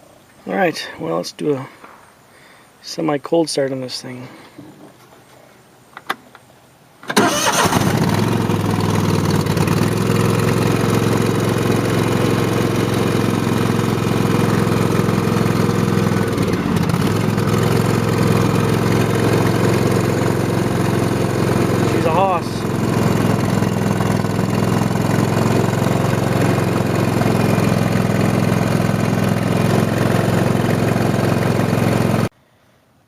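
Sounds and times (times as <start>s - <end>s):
tractor engine cranking and running: 7.0s - 32.3s.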